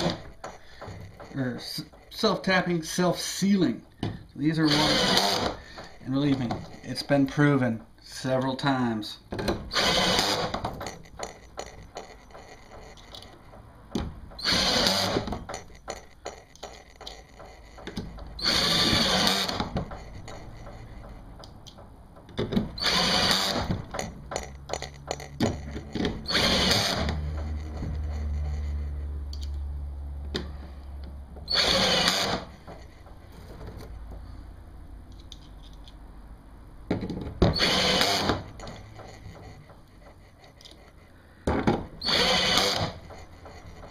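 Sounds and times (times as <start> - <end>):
power drill driving screws: 4.6 - 6.0, 9.7 - 13.2, 14.4 - 20.9, 22.7 - 28.6, 31.4 - 32.8, 37.4 - 39.6, 42.0 - 43.9.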